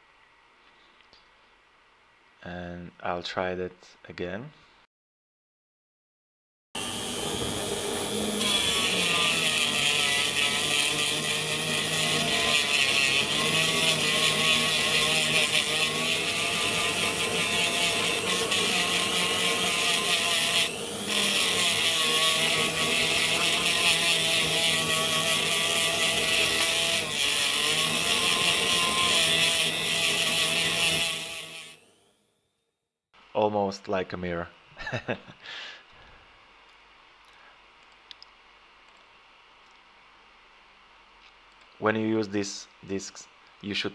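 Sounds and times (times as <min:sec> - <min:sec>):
rotary tool motor whine: 0:06.8 - 0:32.4.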